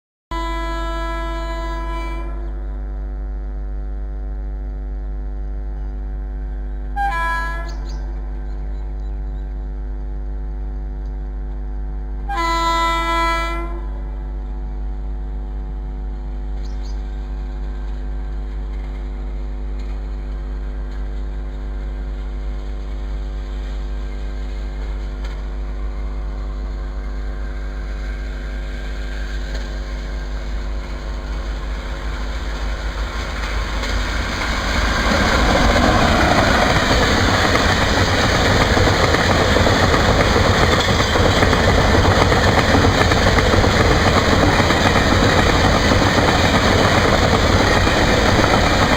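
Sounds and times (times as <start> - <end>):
locomotive horn blasts: 0.3 - 2.6, 7.0 - 7.8, 12.2 - 14.1
train rumble: 5.7 - 48.9.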